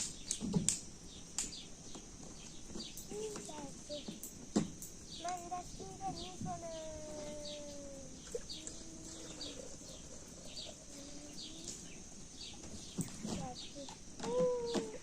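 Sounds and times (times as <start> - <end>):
small bird chirping: 0.0 - 15.0
faint pitched tones: 5.1 - 14.8
long falling bird call: 6.1 - 12.0.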